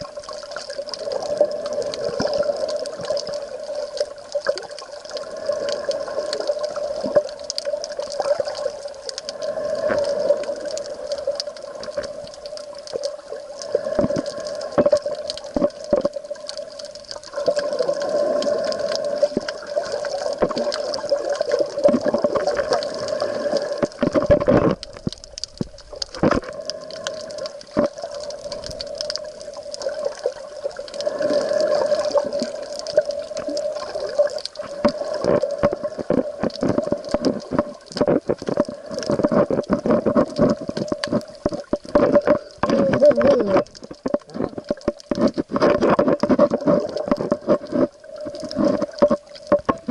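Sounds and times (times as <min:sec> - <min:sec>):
seawater sloshing and gurgling: 0:00.0 - 0:49.9.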